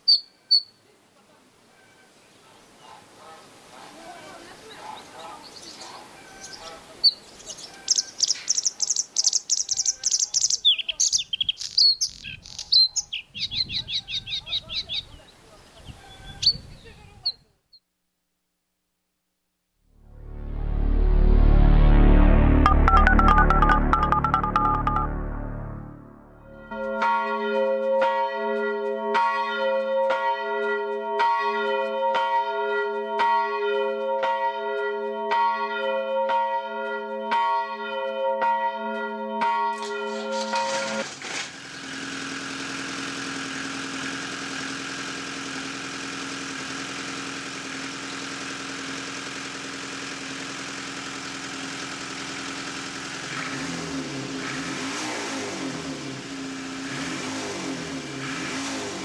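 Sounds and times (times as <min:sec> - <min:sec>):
engine or traffic running: 0:19.9 - 0:27.3, 0:39.7 - 0:59.0
bells struck rhythmically: 0:22.6 - 0:41.0.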